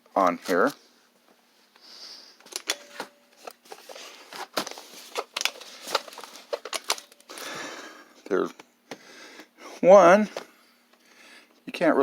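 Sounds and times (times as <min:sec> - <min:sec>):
rustling: 0:03.6 - 0:07.6.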